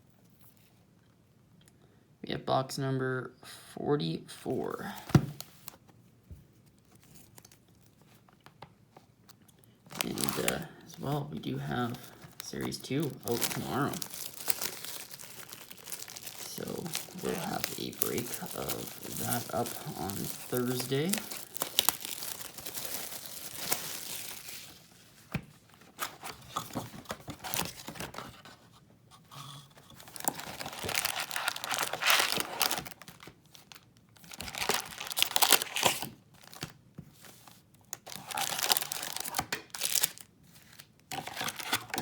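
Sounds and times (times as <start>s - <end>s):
plastic wrap crinkling: 9.4s - 28.2s, 29.9s - 36.8s, 37.8s - 42.0s.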